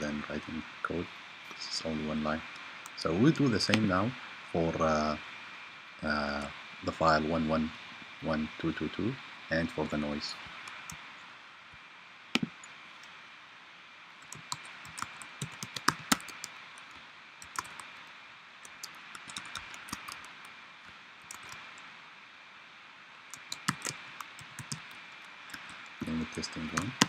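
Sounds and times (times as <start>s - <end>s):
background hiss: 0.0s - 27.0s
keyboard typing: 14.2s - 18.0s, 18.7s - 20.5s, 21.2s - 21.8s, 23.3s - 27.0s.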